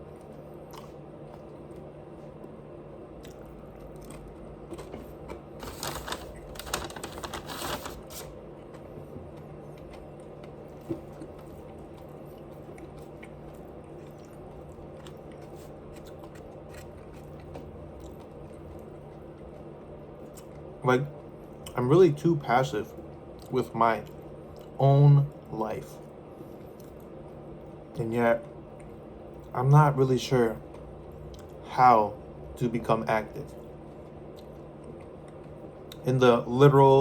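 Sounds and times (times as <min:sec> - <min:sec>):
crunchy chewing: 0:00.0 - 0:02.6, 0:03.2 - 0:21.8
steady low hum: 0:00.0 - 0:37.0.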